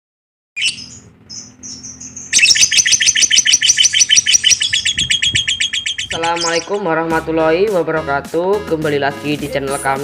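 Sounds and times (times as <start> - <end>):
bird chirping rapidly: 0.6 - 6.8.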